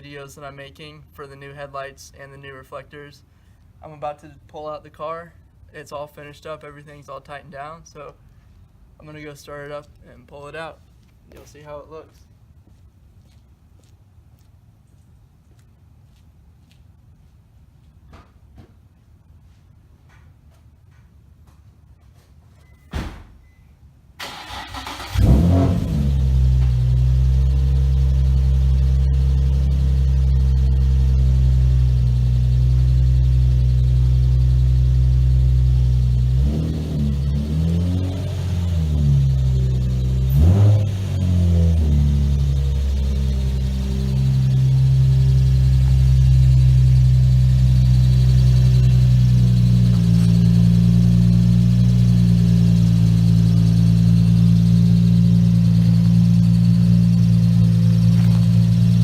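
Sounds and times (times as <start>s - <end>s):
car engine idling: 24.2s - 59.0s.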